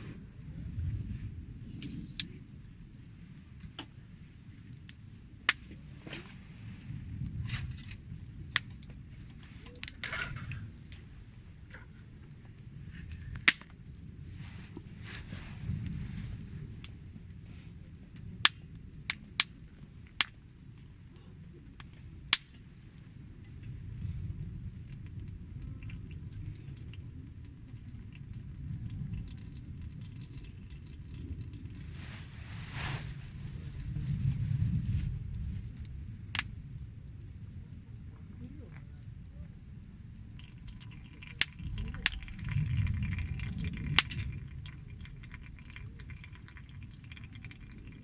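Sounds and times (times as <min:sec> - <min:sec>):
low steady rumble: 0:00.0 - 0:48.0
wood fire crackling: 0:00.0 - 0:48.0
sharp pops from fire: 0:13.1 - 0:13.9, 0:18.1 - 0:20.4, 0:21.8 - 0:22.6, 0:36.3 - 0:36.5, 0:43.8 - 0:44.4.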